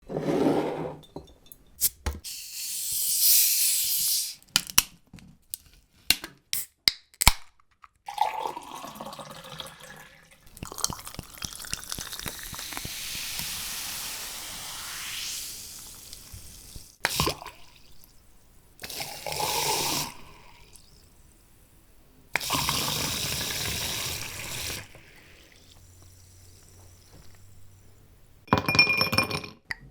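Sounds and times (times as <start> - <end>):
glass clinks: 1.0 - 1.8, 28.5 - 29.6
brief hiss: 2.3 - 4.4
liquid pouring into a glass: 8.1 - 16.5.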